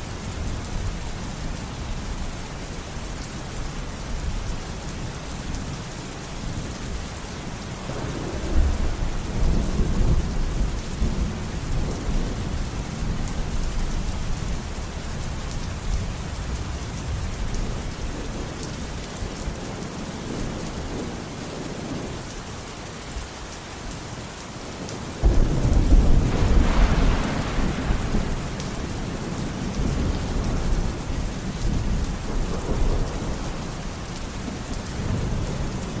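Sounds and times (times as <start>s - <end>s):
heavy rain: 0.0s - 36.0s
thunder rumbling: 7.8s - 13.4s, 25.2s - 36.0s.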